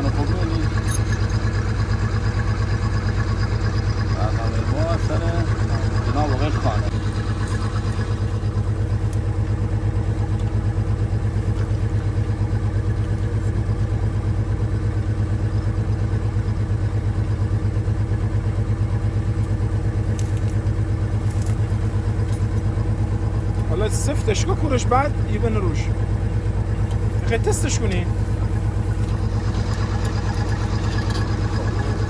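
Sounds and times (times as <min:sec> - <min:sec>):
engine running steadily: 0:00.0 - 0:32.0.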